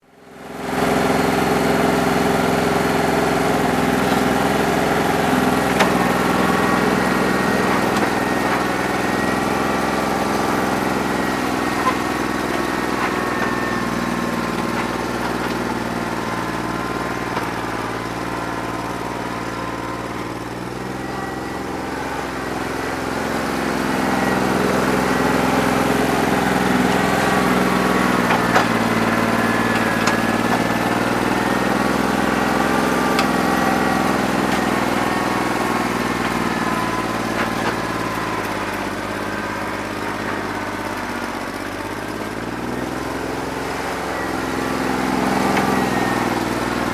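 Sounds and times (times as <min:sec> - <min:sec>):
tractor diesel engine running: 0:00.0 - 0:46.9.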